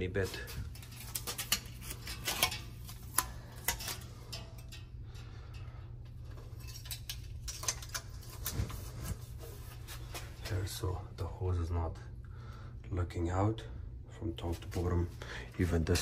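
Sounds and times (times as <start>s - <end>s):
steady low hum: 0.0s - 16.0s
tape clicking and crackling: 0.7s - 9.2s.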